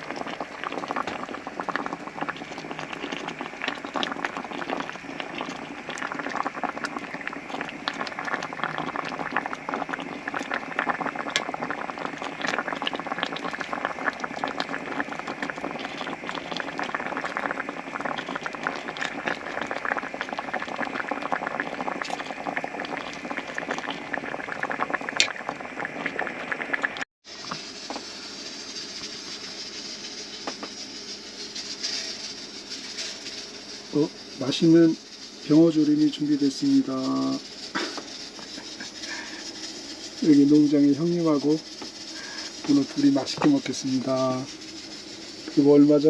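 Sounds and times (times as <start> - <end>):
pot boiling with bursting bubbles: 0.0 - 46.0.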